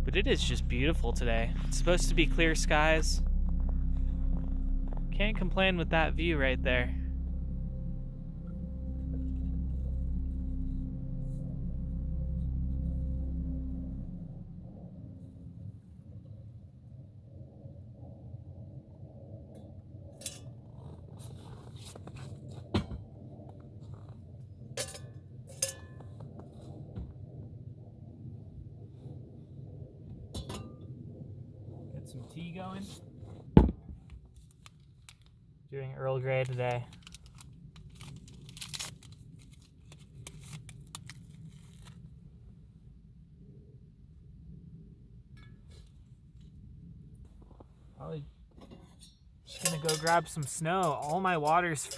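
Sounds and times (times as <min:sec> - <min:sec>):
steady low rumble: 0:00.0 - 0:20.1, 0:49.5 - 0:51.9.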